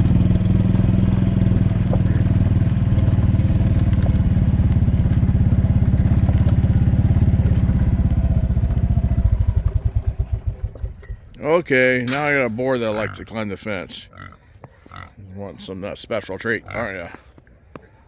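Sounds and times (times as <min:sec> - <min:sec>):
golf cart engine running: 0:00.0 - 0:13.2.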